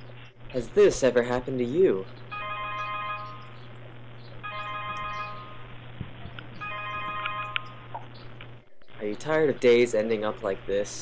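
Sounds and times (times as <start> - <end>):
low electrical hum: 0.0 - 11.0
electronic alarm beeping: 2.3 - 3.6, 4.4 - 5.7, 6.6 - 7.9.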